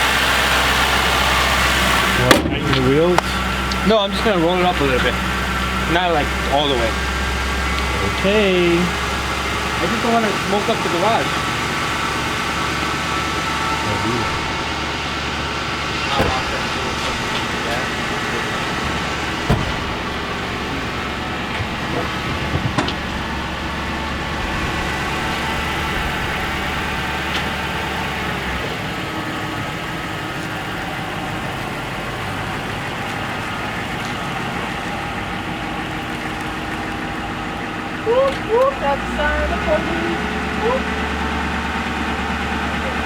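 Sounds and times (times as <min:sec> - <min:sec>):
car engine idling: 0:00.0 - 0:43.0
light engine knocks: 0:16.0 - 0:23.7.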